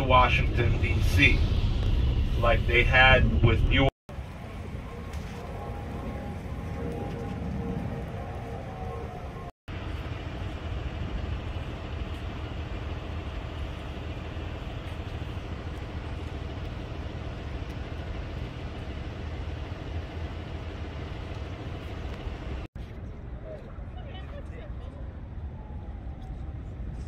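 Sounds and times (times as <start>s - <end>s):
vehicle road and engine noise: 0.0s - 27.0s.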